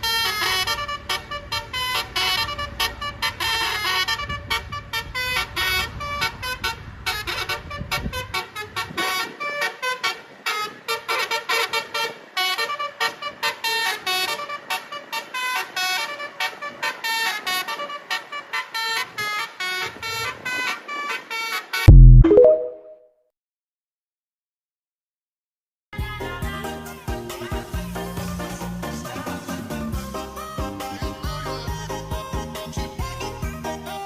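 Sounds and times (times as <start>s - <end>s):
multi-tone musical horn melody: 0.0s - 22.8s.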